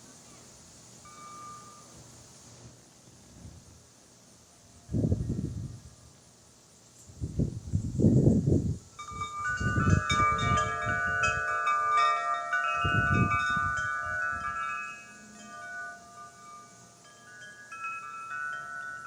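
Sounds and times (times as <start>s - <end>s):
wind chimes ringing: 1.0s - 2.0s, 9.0s - 19.0s.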